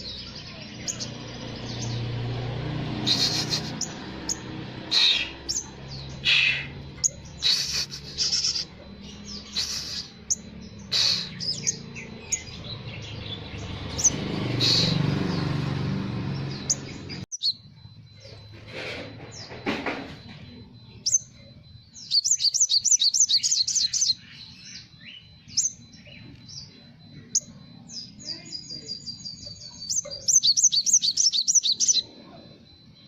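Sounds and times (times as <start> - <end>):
bird singing chirps and trills: 0.0 - 33.0
thin steady high tone: 3.1 - 15.0, 16.4 - 33.0.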